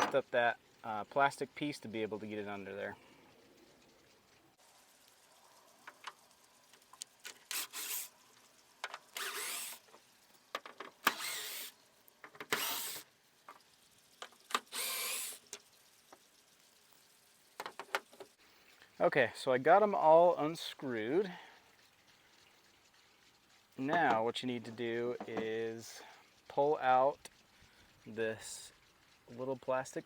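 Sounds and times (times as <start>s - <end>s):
power drill running: 7.5s - 8.1s, 9.2s - 9.8s, 11.0s - 11.7s, 12.5s - 13.0s, 14.6s - 15.4s.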